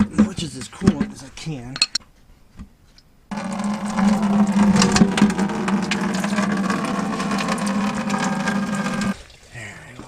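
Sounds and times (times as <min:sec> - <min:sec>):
electric motor rattling and grinding: 0:03.3 - 0:09.2.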